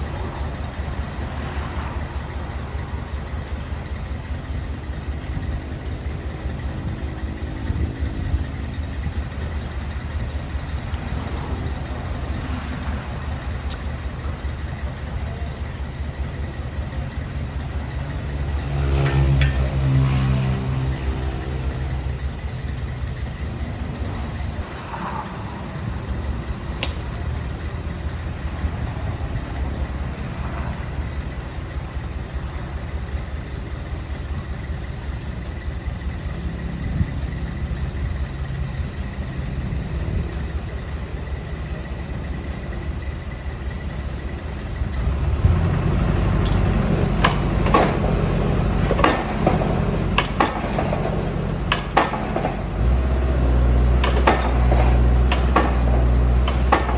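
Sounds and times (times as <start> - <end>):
excavator engine running: 0.0 - 56.9
metallic clanks and knocks: 18.7 - 21.8, 45.6 - 56.9.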